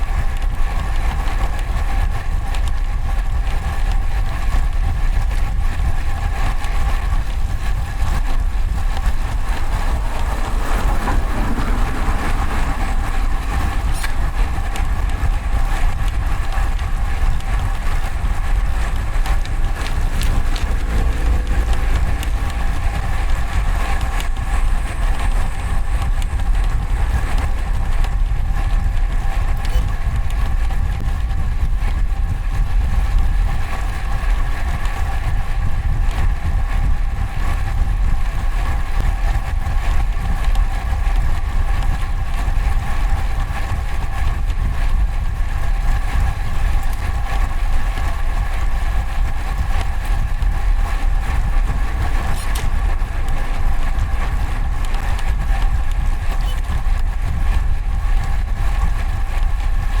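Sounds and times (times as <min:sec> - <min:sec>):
wind rumbling on microphone: 0:00.0 - 1:00.0
steady multi-tone hum: 0:07.8 - 0:27.8.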